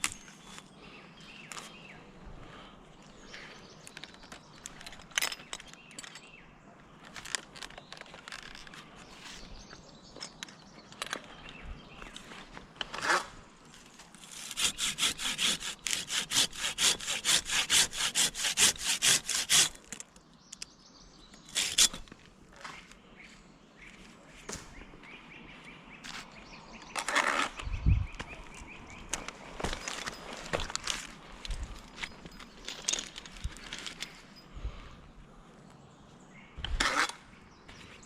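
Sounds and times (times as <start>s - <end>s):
hand saw cutting wood: 14.2s - 19.9s, 21.5s - 22.1s, 36.8s - 37.2s
knocks and rustles: 29.1s - 34.3s.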